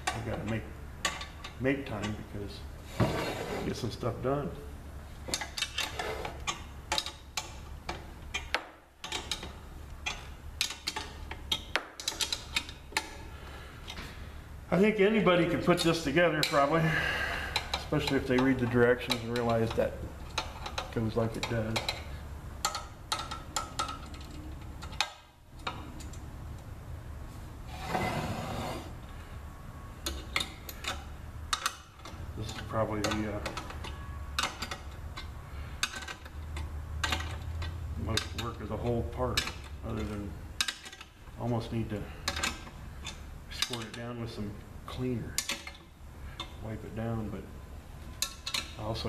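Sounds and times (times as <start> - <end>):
steady low hum: 0.0 - 49.0
scraping rustle: 2.8 - 4.0, 27.3 - 29.0.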